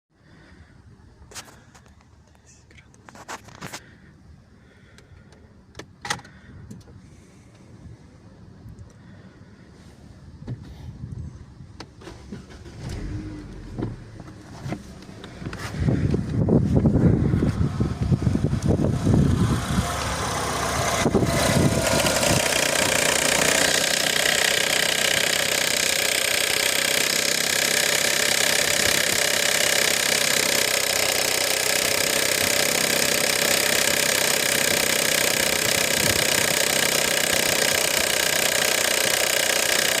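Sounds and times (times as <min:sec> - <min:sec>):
car engine idling with rattling: 0:11.9 - 0:40.0
wind rumbling on microphone: 0:13.0 - 0:22.5.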